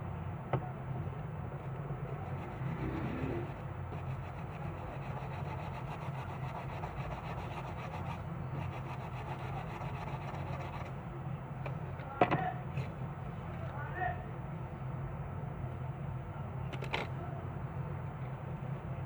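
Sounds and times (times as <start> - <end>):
steady low hum: 0.0 - 19.0
brush scrubbing circuit board: 2.0 - 10.9.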